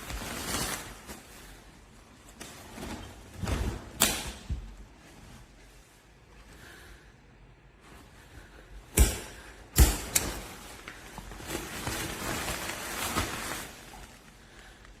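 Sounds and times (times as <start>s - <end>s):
rustling handling noise: 0.0s - 6.8s, 10.2s - 15.0s.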